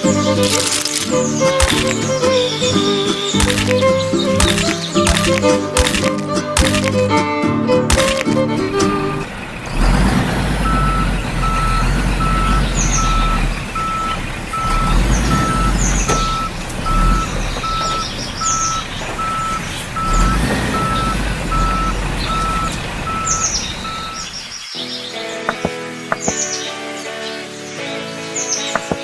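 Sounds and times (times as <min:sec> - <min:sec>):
diesel engine idling: 0:08.4 - 0:24.5
truck reversing alarm beeping: 0:08.7 - 0:24.5.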